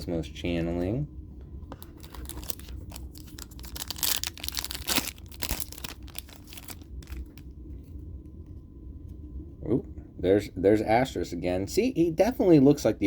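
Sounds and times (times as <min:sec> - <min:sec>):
foil wrapper tearing and crinkling: 0:01.8 - 0:07.4.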